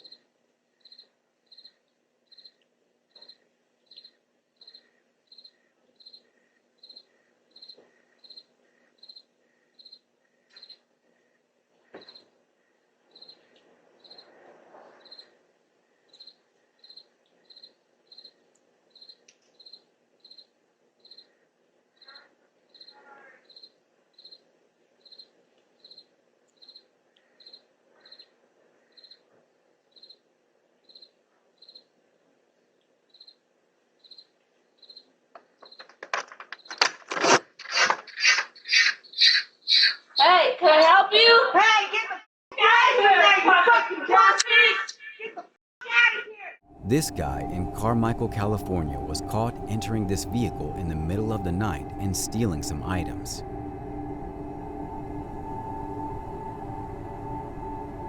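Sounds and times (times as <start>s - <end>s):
crickets chirping: 0.8s - 2.6s, 3.2s - 11.3s, 13.1s - 14.3s, 16.1s - 21.3s, 34.0s - 35.0s.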